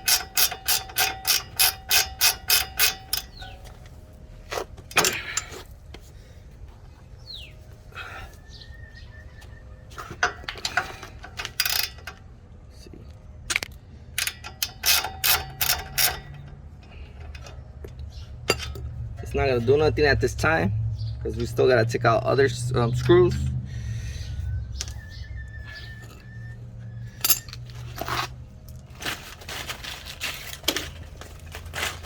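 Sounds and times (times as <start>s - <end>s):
ratchet wrench clicking: 0.0s - 3.6s, 10.3s - 12.2s, 13.5s - 18.9s, 27.1s - 28.2s
clinks of tools and parts: 0.0s - 5.8s, 9.9s - 12.3s, 13.5s - 19.2s, 27.0s - 32.0s.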